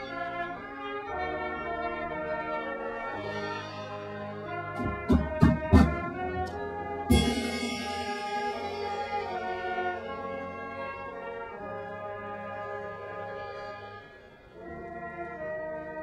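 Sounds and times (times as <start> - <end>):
brass playing sustained chords: 0.0 - 16.0
loud percussion hits: 4.8 - 9.4
cymbal crash ringing: 7.1 - 9.4.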